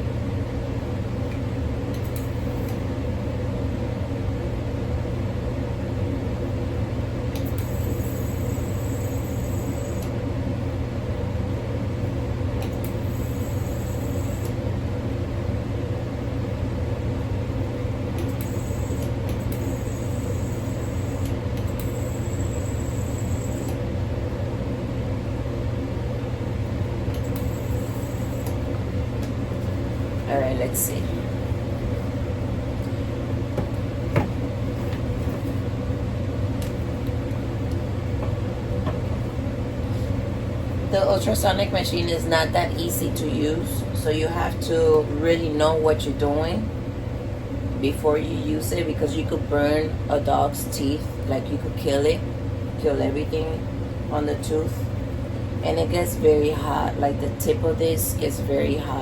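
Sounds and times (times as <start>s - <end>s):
steady low hum: 0.0s - 59.0s
dental scaler high-pitched whine: 2.0s - 2.8s, 7.4s - 10.2s, 12.6s - 14.6s, 18.2s - 23.8s, 27.1s - 28.6s.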